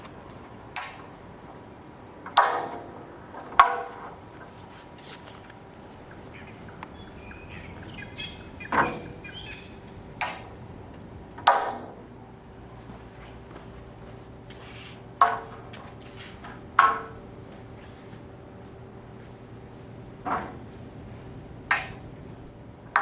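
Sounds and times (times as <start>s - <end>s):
glass gate clacking shut: 2.2s - 4.2s, 8.2s - 10.6s.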